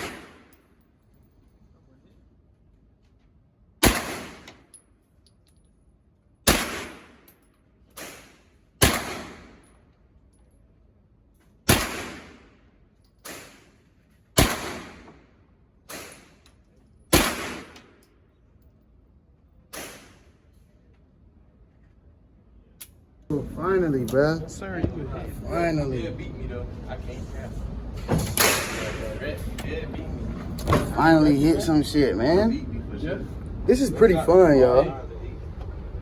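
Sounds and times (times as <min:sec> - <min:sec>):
gunshots with echo: 0:00.0 - 0:00.5, 0:03.8 - 0:04.5, 0:06.5 - 0:07.2, 0:14.4 - 0:15.2, 0:17.1 - 0:17.8.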